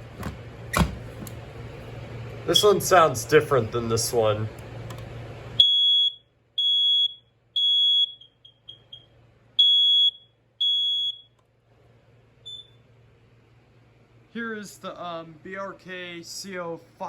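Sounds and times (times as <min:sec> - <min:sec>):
smoke alarm beeps: 0:05.6 - 0:11.4, 0:12.4 - 0:12.8
smoke alarm chirps: 0:05.6 - 0:11.4, 0:12.4 - 0:12.8.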